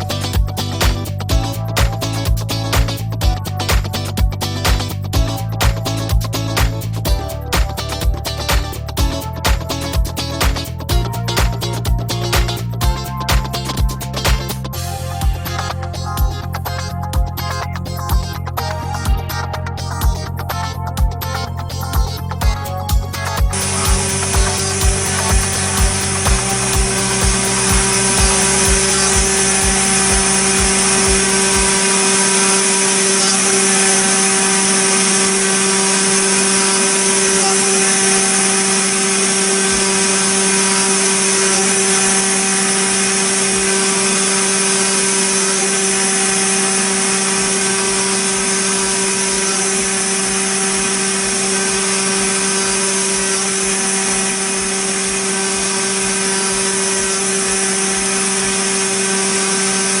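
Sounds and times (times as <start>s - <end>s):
cutter hissing on metal: 23.5s - 60.0s
machine spindle whine: 23.5s - 60.0s.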